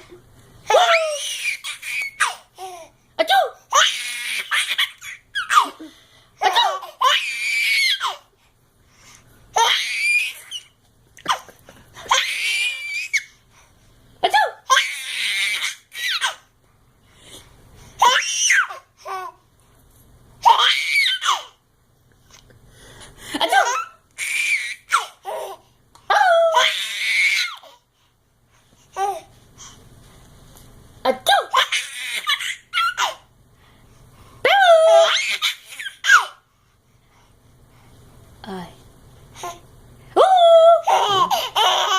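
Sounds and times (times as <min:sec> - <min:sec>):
baby laughing: 0:03.7 - 0:07.3, 0:23.4 - 0:25.6, 0:31.2 - 0:33.2, 0:40.8 - 0:41.9.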